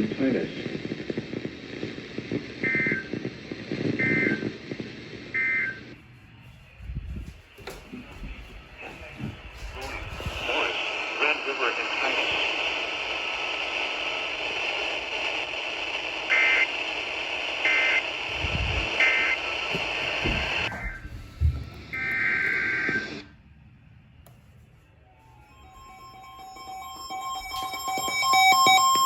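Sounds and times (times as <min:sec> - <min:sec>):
weather radio hiss: 0:00.0 - 0:06.0, 0:08.0 - 0:20.9
electronic beeping tones: 0:25.4 - 0:29.0
screeching digital data bursts: 0:25.5 - 0:29.0.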